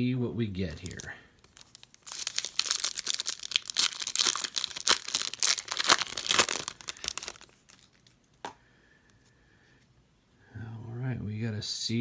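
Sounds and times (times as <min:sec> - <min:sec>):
wrapper tearing and crinkling: 0:00.7 - 0:08.2.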